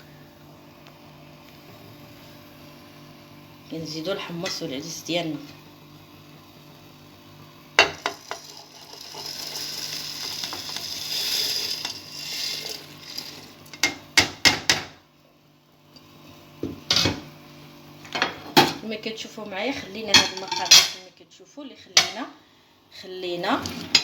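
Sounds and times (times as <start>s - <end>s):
pot and utensils clinking: 7.8s - 14.0s
dry legumes pouring hiss: 8.0s - 13.7s.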